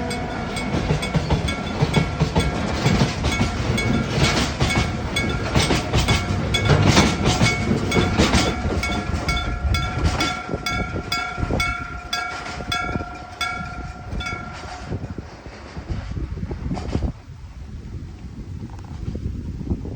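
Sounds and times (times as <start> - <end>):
level crossing bell clanging: 0.0 - 15.1
freight train rumbling over rails: 0.0 - 18.1.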